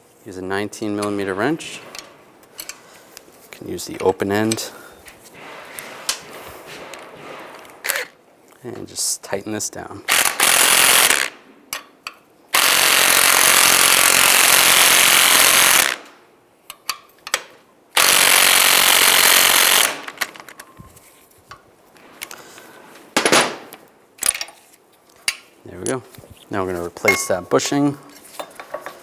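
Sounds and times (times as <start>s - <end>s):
impact wrench hammering: 10.1s - 11.9s.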